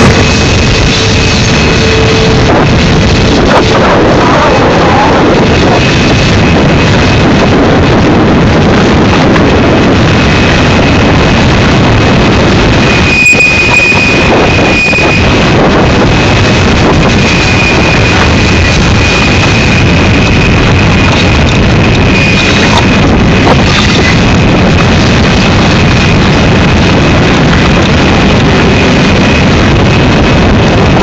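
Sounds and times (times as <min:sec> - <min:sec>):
train wheels rumbling on rail: 0:00.0 - 0:31.0
high-pitched wheel squeal: 0:00.2 - 0:02.5, 0:12.9 - 0:15.4, 0:22.0 - 0:22.9.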